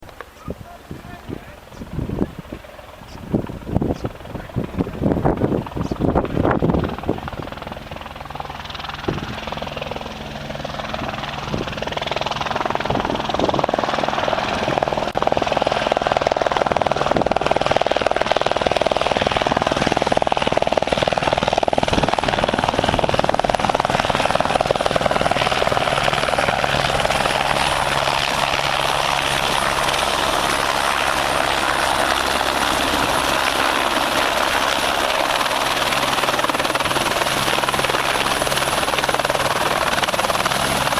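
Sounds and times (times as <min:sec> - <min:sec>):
helicopter rotor and turbine whine: 0:00.0 - 0:40.9.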